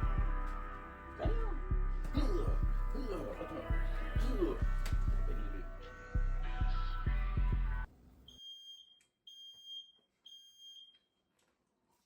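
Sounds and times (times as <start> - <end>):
background music with a beat: 0.0 - 7.9
smoke alarm beeping: 8.3 - 11.1.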